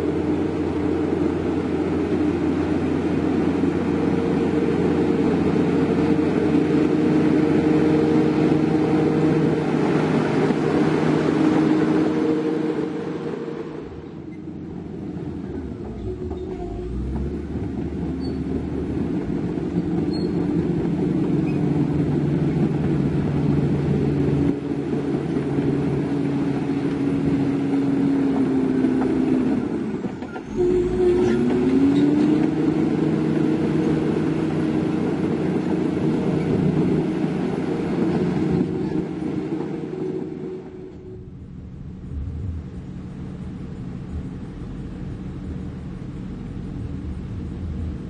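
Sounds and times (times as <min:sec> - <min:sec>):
heavy diesel engine running: 0:00.0 - 0:48.0.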